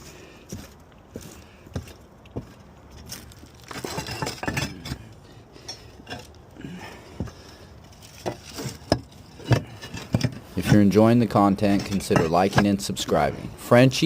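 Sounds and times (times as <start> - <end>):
roof tiles clinking and scraping: 0.5 - 13.4.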